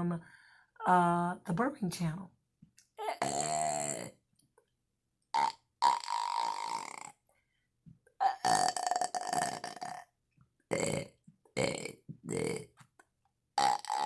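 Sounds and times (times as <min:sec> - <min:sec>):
woman burping: 0:03.0 - 0:04.2, 0:05.4 - 0:07.1, 0:08.2 - 0:10.0, 0:10.7 - 0:12.6, 0:13.6 - 0:14.0.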